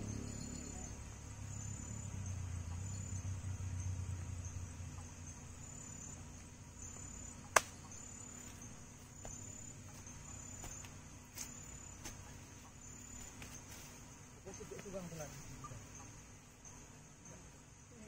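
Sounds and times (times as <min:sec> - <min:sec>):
insects chirping: 0:00.0 - 0:18.0.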